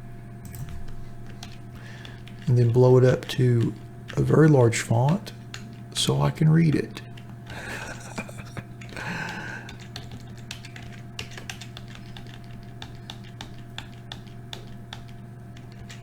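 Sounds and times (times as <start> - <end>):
low electrical hum: 0.0 - 16.0
keyboard and mouse clicks: 8.7 - 16.0.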